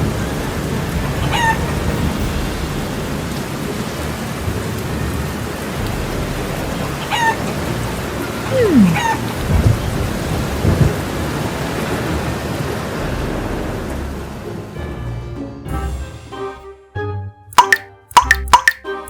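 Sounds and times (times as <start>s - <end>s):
steady rain: 0.0s - 15.2s
low thunder rumbles: 8.6s - 12.4s.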